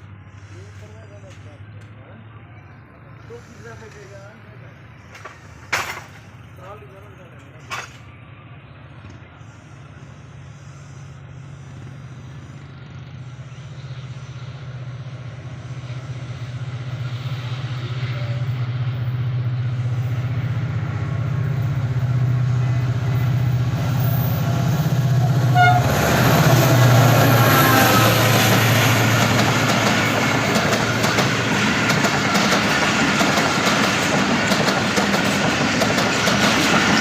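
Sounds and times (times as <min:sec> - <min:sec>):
locomotive engine hum: 0:00.0 - 0:37.0
train horn blast: 0:25.3 - 0:28.8.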